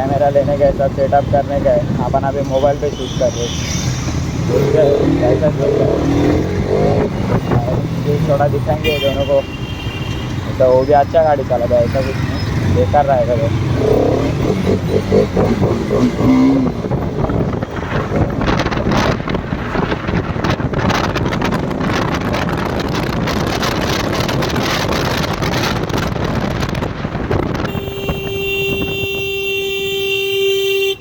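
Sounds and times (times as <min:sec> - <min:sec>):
wind buffeting microphone: 0:00.0 - 0:29.6
motorcycle engine and road noise: 0:00.0 - 0:31.0
vehicle horn long note: 0:08.8 - 0:10.3, 0:27.7 - 0:31.0.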